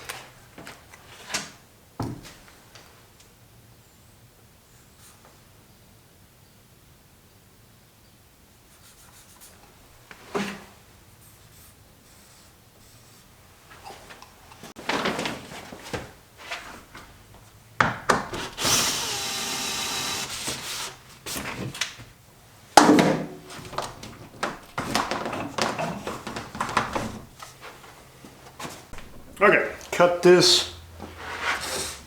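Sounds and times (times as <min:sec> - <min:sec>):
power tool running: 0:18.4 - 0:21.0
wooden pieces knocking: 0:22.8 - 0:27.4.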